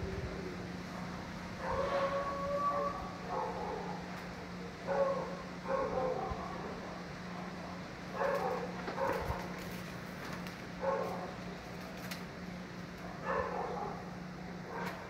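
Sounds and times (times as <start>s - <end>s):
steady low hum: 0.0s - 15.0s
dog barking: 1.6s - 2.0s, 2.9s - 4.0s, 4.9s - 6.6s, 8.1s - 9.5s, 10.8s - 11.4s, 13.0s - 15.0s.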